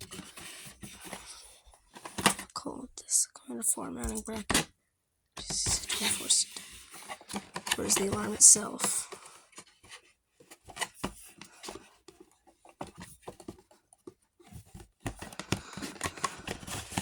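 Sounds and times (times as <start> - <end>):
plastic packaging being handled: 5.4 - 17.0.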